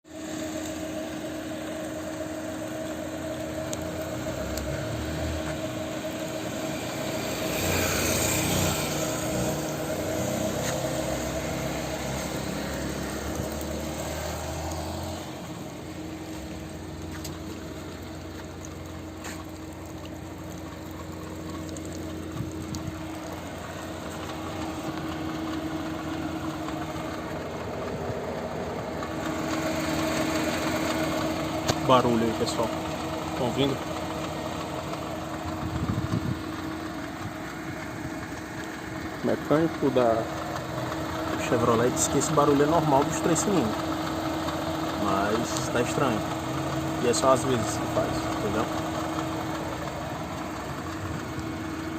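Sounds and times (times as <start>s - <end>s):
car engine humming: 0.0s - 51.9s.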